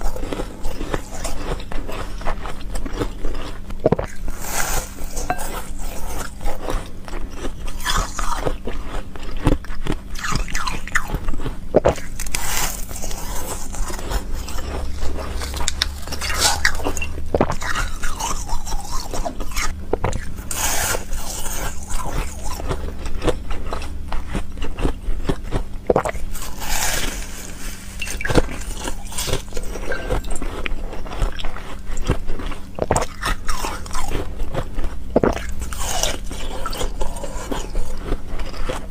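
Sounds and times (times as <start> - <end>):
ice crunching being chewed: 0.0 - 38.9.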